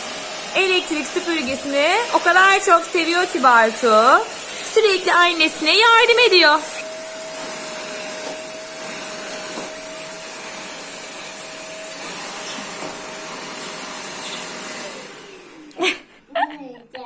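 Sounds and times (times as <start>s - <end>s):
vacuum cleaner motor whine: 0.0s - 16.1s.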